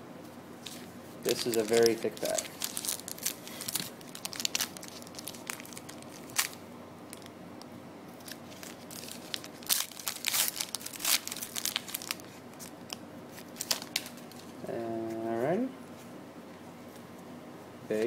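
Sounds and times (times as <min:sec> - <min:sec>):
foil wrapper crinkling and tearing: 0:00.6 - 0:07.3, 0:08.2 - 0:14.6.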